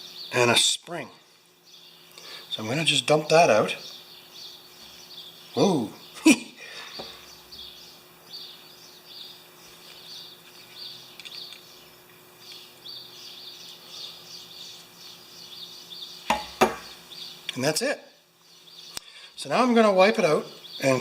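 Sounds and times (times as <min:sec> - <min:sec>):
small birds chirping: 0:00.0 - 0:21.0
steady low hum: 0:00.0 - 0:21.0
small metal part hitting bench: 0:16.3 - 0:16.9.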